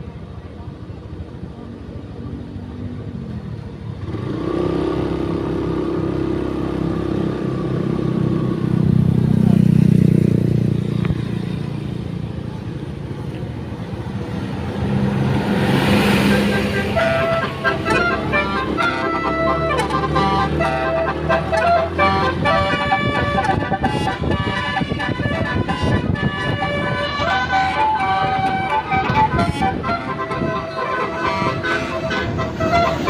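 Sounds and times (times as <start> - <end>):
buses driving past: 0.0 - 33.0
multi-tone horn: 15.7 - 33.0.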